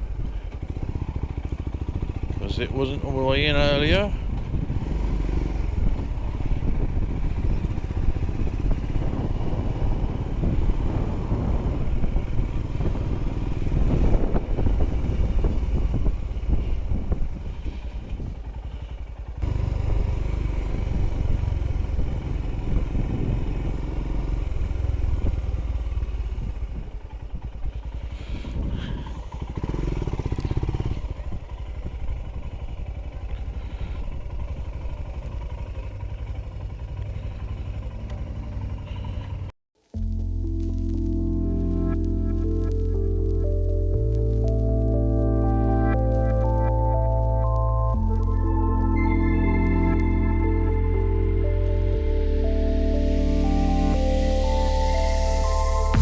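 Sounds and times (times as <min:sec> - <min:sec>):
motorcycle engine running: 0:00.0 - 0:56.0
wind buffeting microphone: 0:03.4 - 0:23.8, 0:24.5 - 0:33.0.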